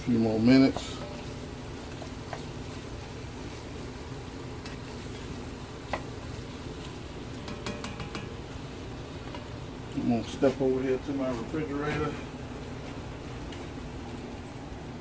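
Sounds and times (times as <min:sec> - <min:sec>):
vegetables sizzling in a pot: 0:00.0 - 0:15.0
utensil clicking against pot: 0:07.4 - 0:08.4.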